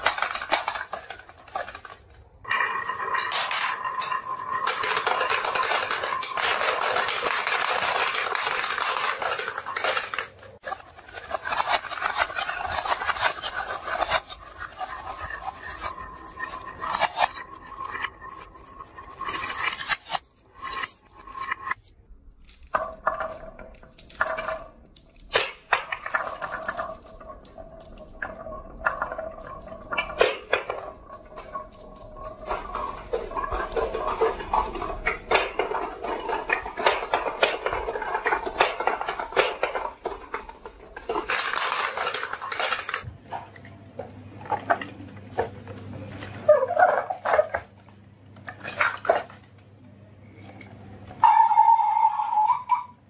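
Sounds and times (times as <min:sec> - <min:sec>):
marbles rattling down marble run: 0:00.0 - 0:43.1, 0:51.2 - 0:53.0.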